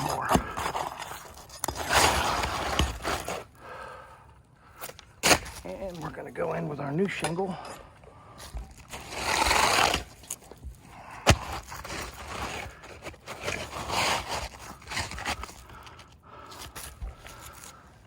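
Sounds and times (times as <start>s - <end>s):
wooden shingle scraping: 0.0s - 3.9s, 8.5s - 17.9s.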